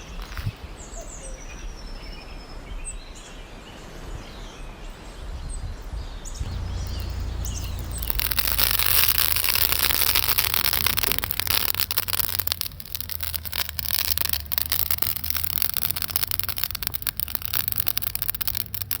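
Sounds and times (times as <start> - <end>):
birds chirping faintly: 6.4 - 19.0
campfire hissing rush: 6.4 - 19.0
fire crackling and popping: 6.4 - 19.0.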